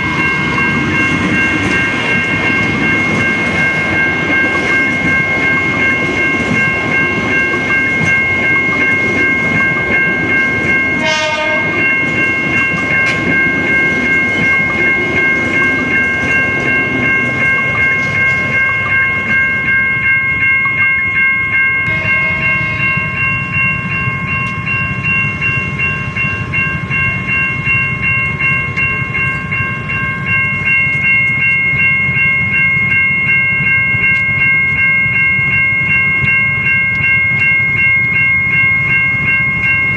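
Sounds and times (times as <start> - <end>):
electronic crossing warning bell: 0.0 - 39.9
passing train rumble and clatter: 0.0 - 39.9.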